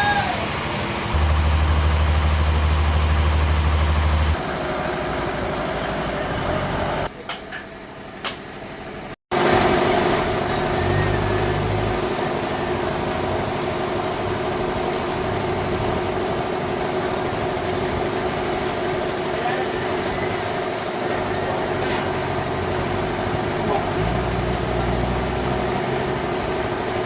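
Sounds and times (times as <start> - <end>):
bandsaw mechanical drone: 0.0 - 5.6, 19.4 - 27.0.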